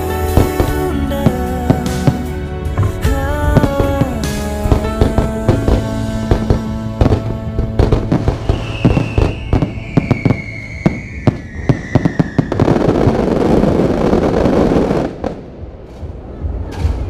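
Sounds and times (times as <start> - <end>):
dense crackling burst: 0.0 - 16.6
background music: 0.0 - 17.0
fireworks cracking and banging: 0.0 - 17.0
falling whistle: 8.4 - 12.7.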